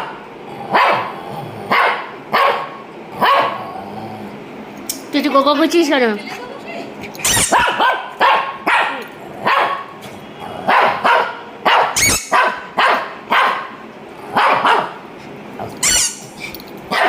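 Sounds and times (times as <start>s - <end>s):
small dog barking: 0.0s - 1.1s, 1.7s - 3.6s, 7.3s - 10.0s, 10.7s - 15.0s.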